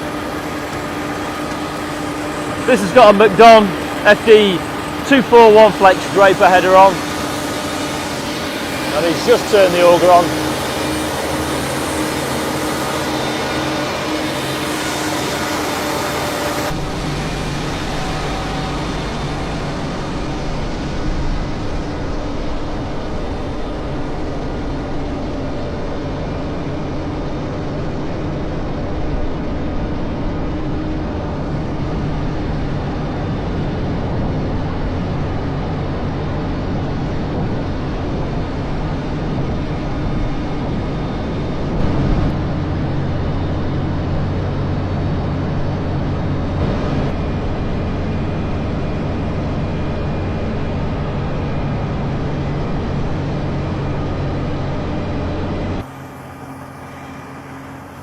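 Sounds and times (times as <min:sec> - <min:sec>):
combine harvester engine hum: 0:00.0 - 0:58.0.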